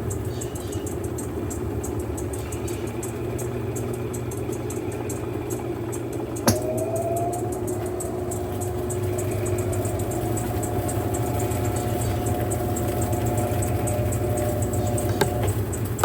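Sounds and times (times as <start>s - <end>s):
washing machine motor humming: 0.0s - 16.0s.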